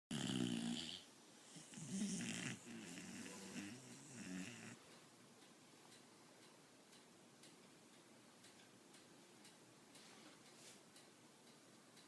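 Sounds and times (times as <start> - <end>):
dog snoring: 0.1 - 4.8.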